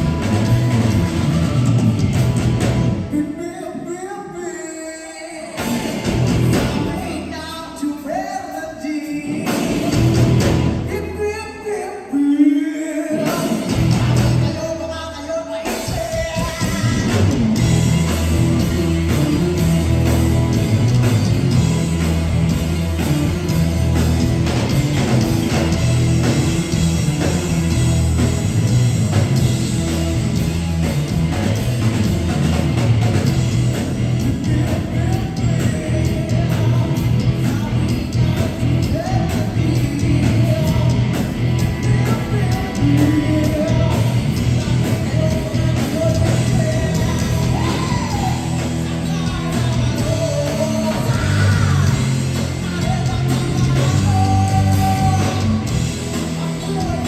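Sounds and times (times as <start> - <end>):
rock band playing: 0.0 - 4.6, 5.2 - 12.2, 13.0 - 57.0
person singing: 33.4 - 57.0.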